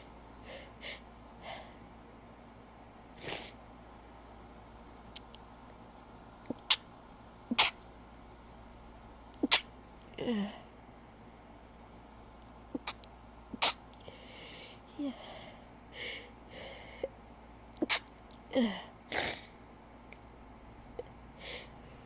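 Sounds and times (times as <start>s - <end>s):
woman sneezing: 9.4s - 9.7s
sharp intake of breath: 14.0s - 14.8s.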